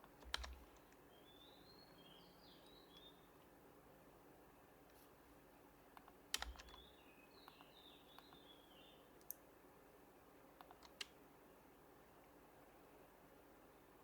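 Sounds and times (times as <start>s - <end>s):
keyboard keystrokes: 0.0s - 0.8s, 6.0s - 6.9s, 10.6s - 11.2s.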